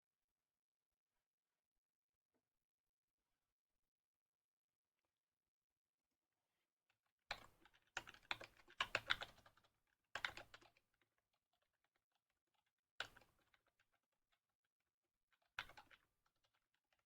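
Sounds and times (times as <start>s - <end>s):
computer keyboard typing: 7.3s - 10.8s, 13.0s - 13.4s, 15.6s - 16.0s.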